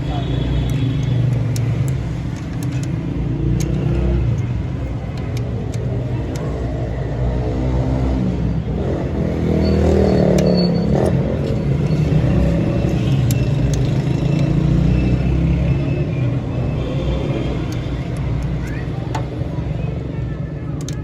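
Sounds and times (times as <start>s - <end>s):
light metallic clicks: 0.4s - 6.9s, 10.3s - 14.6s.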